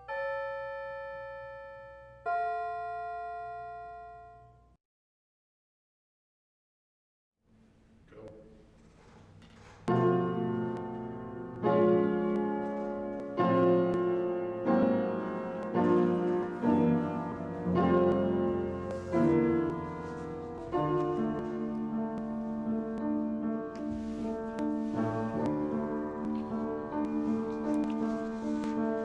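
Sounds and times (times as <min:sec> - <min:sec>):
piano chords: 0:09.8 - 0:29.0.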